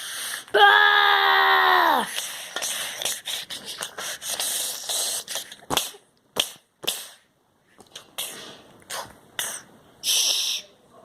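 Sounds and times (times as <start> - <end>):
short hissing bursts: 9.4 - 10.7.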